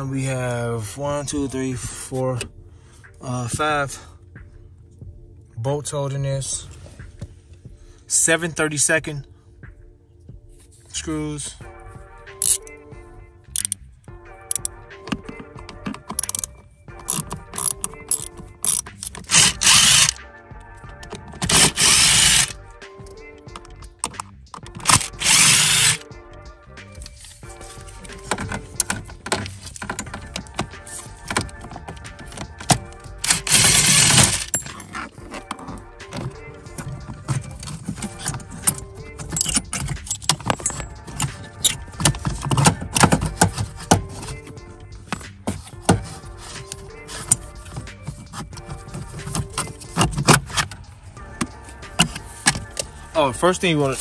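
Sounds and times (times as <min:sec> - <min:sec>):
metallic clinks of hand tools and screws: 0:12.4 - 0:12.6, 0:13.6 - 0:13.8, 0:16.1 - 0:16.5, 0:17.1 - 0:19.2, 0:38.2 - 0:41.8
ratchet clicking: 0:13.6 - 0:13.8, 0:16.2 - 0:16.5, 0:17.1 - 0:20.2, 0:21.5 - 0:22.5, 0:24.9 - 0:26.0.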